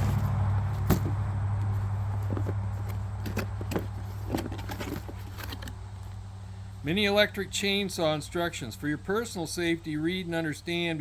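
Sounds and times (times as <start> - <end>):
low hum: 0.0 - 7.5.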